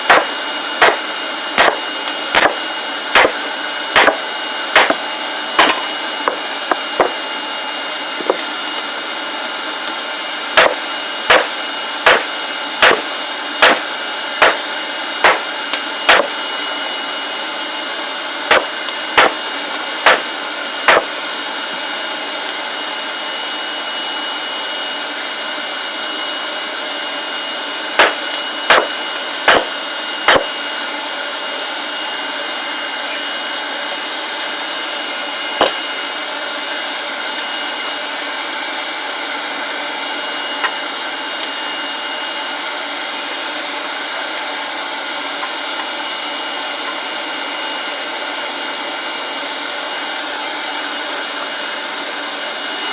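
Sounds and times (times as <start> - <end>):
hammer blows on anvil: 10.6 - 14.6, 16.1 - 16.4, 30.3 - 30.5.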